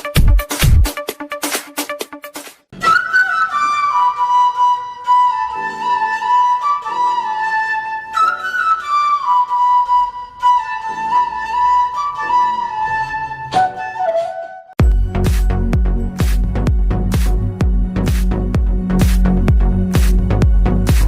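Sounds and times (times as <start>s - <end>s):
soft musical accompaniment: 0.0s - 21.0s
slow flute-like melody: 2.7s - 14.8s.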